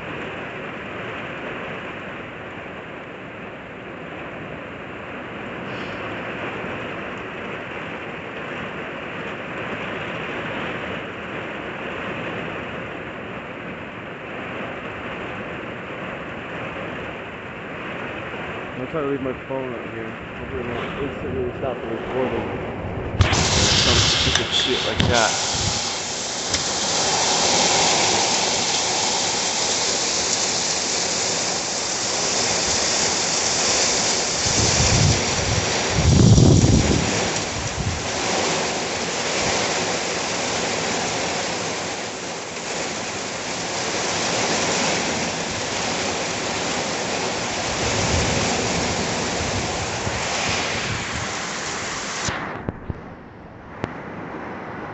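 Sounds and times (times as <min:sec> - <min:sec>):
heavy rain pouring: 0:00.0 - 0:53.0
wind buffeting microphone: 0:19.6 - 0:39.7, 0:47.5 - 0:54.9.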